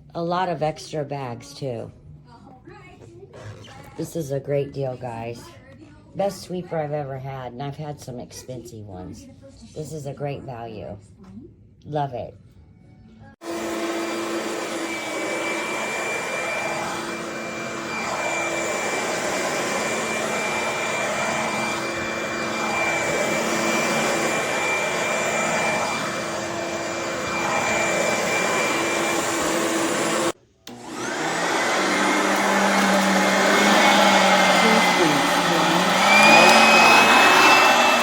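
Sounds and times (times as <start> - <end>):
upright vacuum whine: 13.4 - 38.0.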